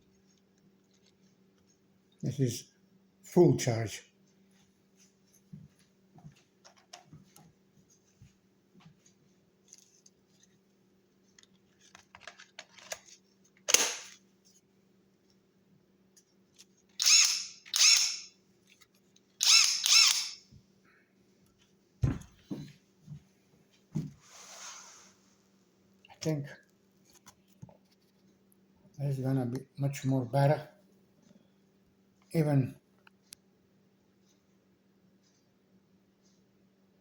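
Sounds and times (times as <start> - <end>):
impact wrench motor whirring: 17.0 - 18.3, 19.4 - 20.4
tool handling clicks: 19.4 - 20.4
tool set down thumps: 22.0 - 22.7.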